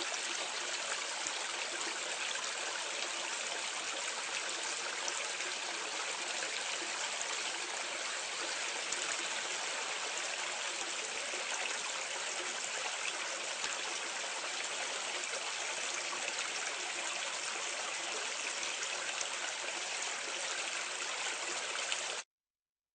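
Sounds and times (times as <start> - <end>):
water pouring down a drain: 0.0 - 22.2.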